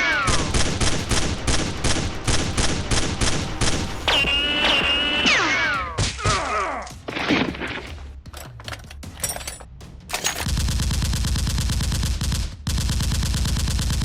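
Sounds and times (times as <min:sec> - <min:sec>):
automatic gunfire: 0:00.3 - 0:04.4
scattered clicks and knocks: 0:07.1 - 0:10.6.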